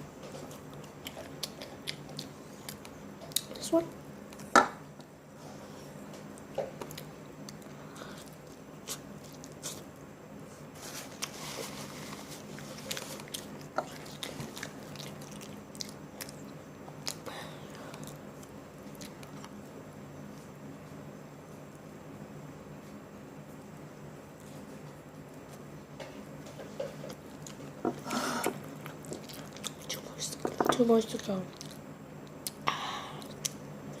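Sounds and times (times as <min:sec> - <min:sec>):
wet chewing: 0:00.4 - 0:03.6, 0:12.0 - 0:19.6, 0:28.4 - 0:30.6, 0:31.5 - 0:32.6.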